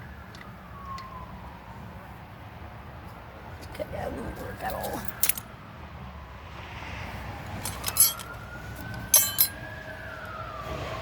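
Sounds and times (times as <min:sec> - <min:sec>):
metal tools clinking: 0:05.0 - 0:05.4, 0:07.6 - 0:08.4, 0:09.0 - 0:09.6.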